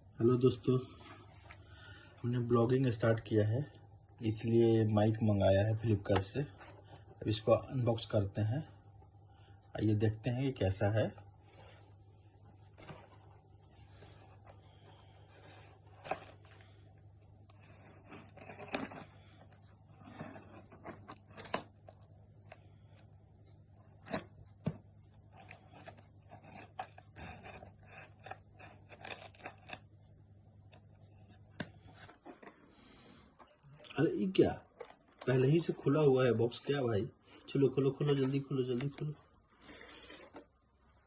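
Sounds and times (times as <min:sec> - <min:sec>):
packaging tearing and rustling: 0:17.6 - 0:19.4, 0:25.4 - 0:29.9.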